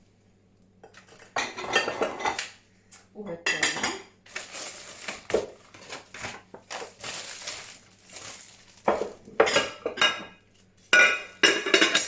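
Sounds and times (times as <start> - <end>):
packaging rustling: 4.3 - 9.3
glass dishes clinking: 8.9 - 10.4, 11.0 - 12.0.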